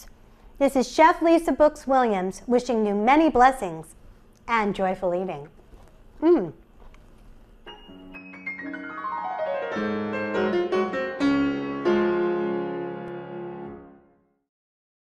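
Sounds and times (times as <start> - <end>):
piano music with ringing chords: 7.7 - 14.2.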